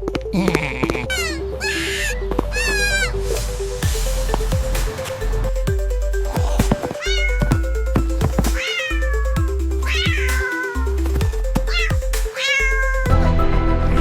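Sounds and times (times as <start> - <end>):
background music with beat: 2.2 - 14.0
kitten meowing: 6.8 - 7.6, 8.6 - 11.0, 11.6 - 13.1.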